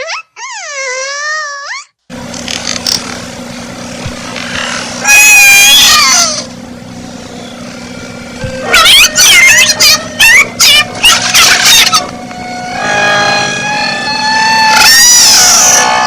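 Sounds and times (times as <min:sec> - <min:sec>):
wavering animal-like cry: 0:00.0 - 0:01.9, 0:04.4 - 0:06.5, 0:08.6 - 0:16.0
steady hum and hiss: 0:02.1 - 0:16.0.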